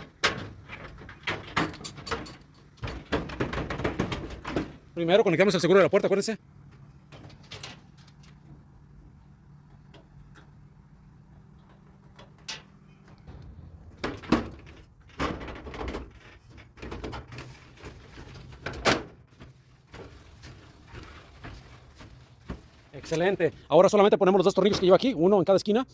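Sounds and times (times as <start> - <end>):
sharp knocks: 13.2 - 15.9.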